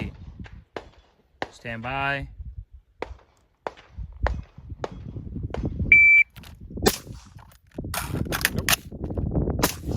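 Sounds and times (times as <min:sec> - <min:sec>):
shot timer beep: 0:05.9 - 0:06.3
gunshot: 0:06.8 - 0:07.3.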